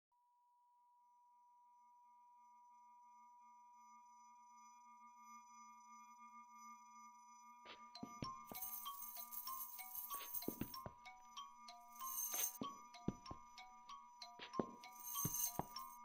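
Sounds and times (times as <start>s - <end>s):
steady electronic sine tone: 1.8s - 7.6s.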